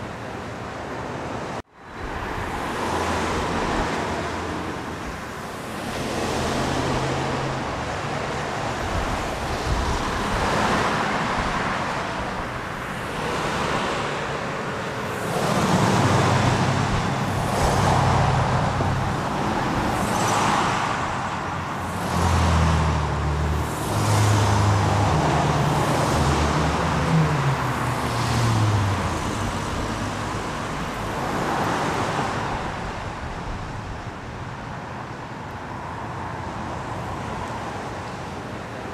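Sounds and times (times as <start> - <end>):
road traffic: 0.0 - 38.9
vehicles passing: 0.0 - 38.9.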